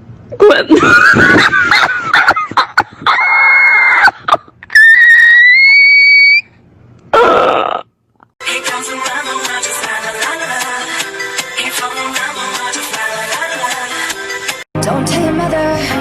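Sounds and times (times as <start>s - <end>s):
shrill screaming: 3.1s - 6.5s
long high-pitched shriek: 4.7s - 6.5s
music: 8.4s - 16.0s.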